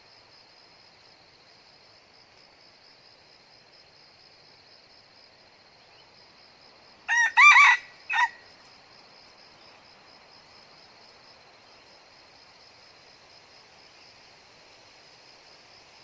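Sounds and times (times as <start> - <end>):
high insect buzz: 0.0 - 16.0
rooster crowing: 7.1 - 8.4.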